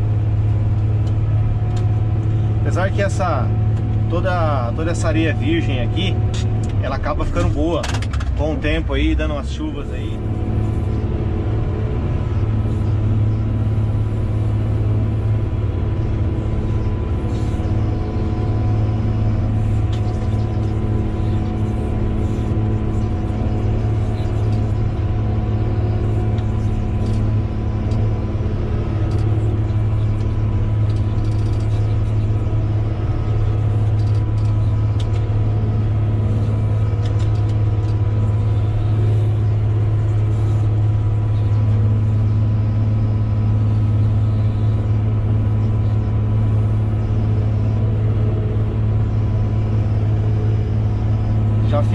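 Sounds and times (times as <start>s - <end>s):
bulldozer diesel engine running: 0.0s - 51.9s
faint clicks and rattles: 6.3s - 8.5s, 29.0s - 32.3s, 33.4s - 35.4s, 36.7s - 38.2s.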